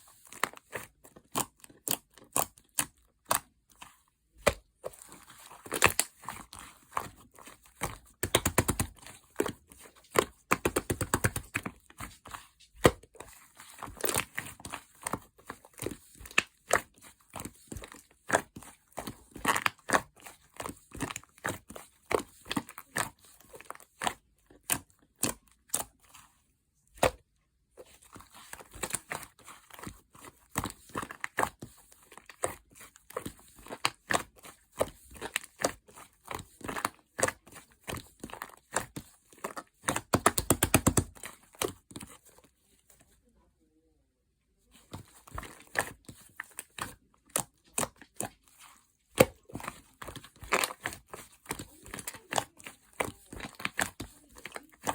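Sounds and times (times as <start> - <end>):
slime squishing with sticky pops: 0.2 - 26.3, 26.9 - 42.6, 44.8 - 54.9.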